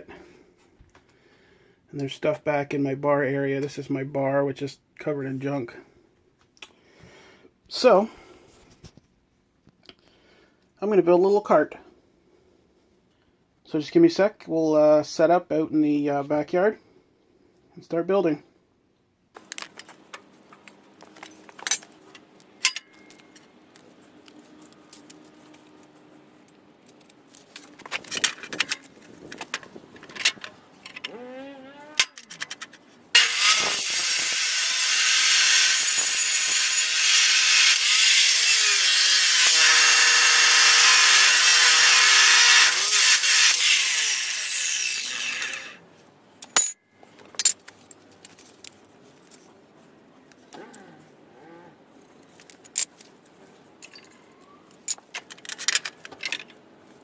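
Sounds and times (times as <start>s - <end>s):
tools knocking and clattering: 21.1s - 23.4s, 32.0s - 32.8s
power saw cutting: 33.2s - 45.8s.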